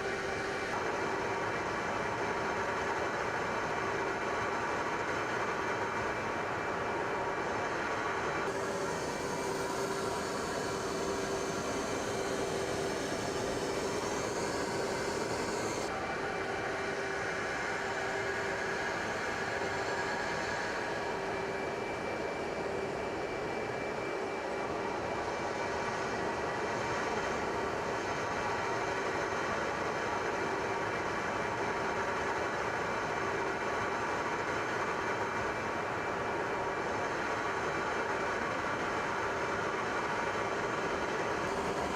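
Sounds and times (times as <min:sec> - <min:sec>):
jet engine running: 0:08.3 - 0:31.0, 0:40.3 - 0:41.9.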